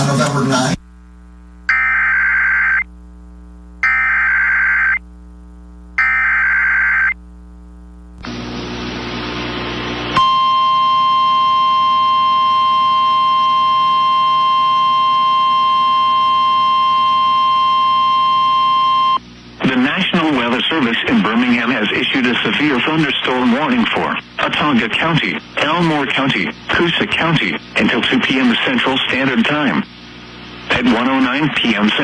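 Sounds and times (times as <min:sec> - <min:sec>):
static hiss: 0:00.0 - 0:10.2, 0:19.2 - 0:32.0
warbling data tones: 0:01.7 - 0:02.9, 0:03.8 - 0:05.0, 0:06.0 - 0:07.2
steady warning alarm tone: 0:10.2 - 0:19.2.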